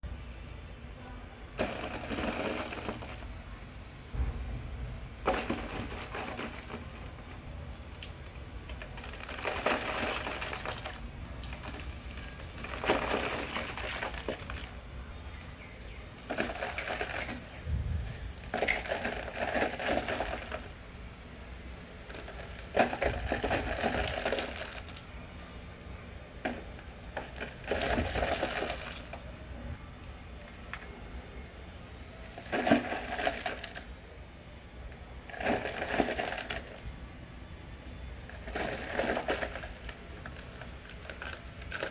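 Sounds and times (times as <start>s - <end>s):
dirt clods crunching: 1.4s - 20.8s, 21.7s - 25.2s, 25.9s - 29.3s, 37.8s - 41.9s.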